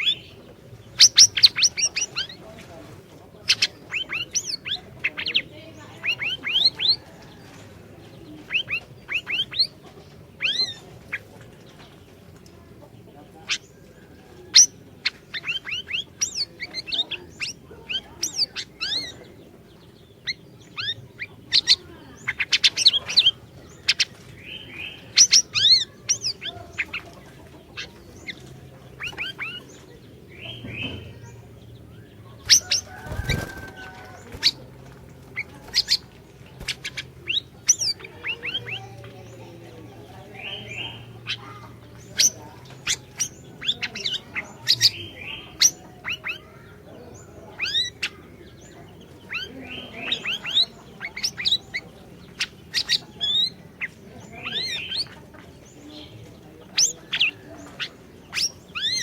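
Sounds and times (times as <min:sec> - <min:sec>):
songbird chirping and whistling: 0:00.0 - 0:02.4, 0:13.4 - 0:27.1, 0:27.8 - 0:34.7, 0:47.5 - 0:55.2.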